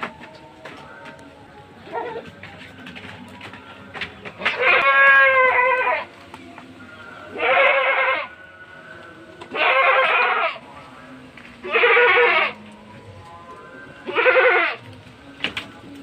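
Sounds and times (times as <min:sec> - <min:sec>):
goats bleating: 0:01.8 - 0:02.4, 0:04.4 - 0:06.2, 0:07.3 - 0:08.4, 0:09.4 - 0:10.6, 0:11.6 - 0:12.7, 0:14.0 - 0:15.0.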